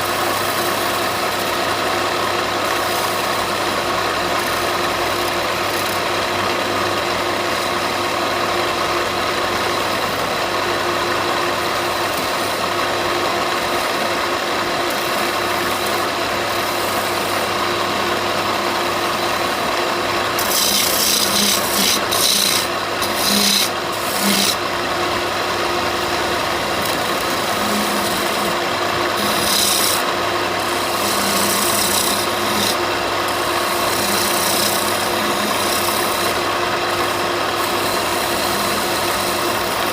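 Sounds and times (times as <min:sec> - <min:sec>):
power tool sanding wood: 0:09.6 - 0:39.9.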